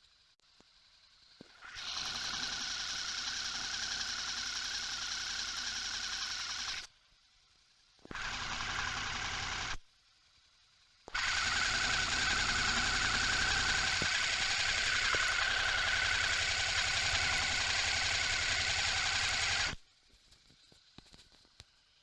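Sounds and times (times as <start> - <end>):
motorcycle engine running: 11.4 - 19.8.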